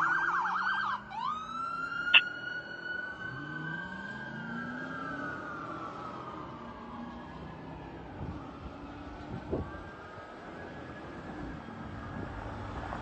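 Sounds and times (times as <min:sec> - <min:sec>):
fire siren wailing: 0:00.0 - 0:13.0.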